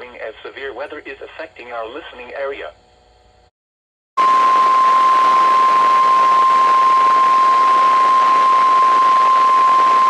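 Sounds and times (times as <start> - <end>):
radio hiss: 0.0 - 2.9
steady alarm tone: 4.2 - 10.0.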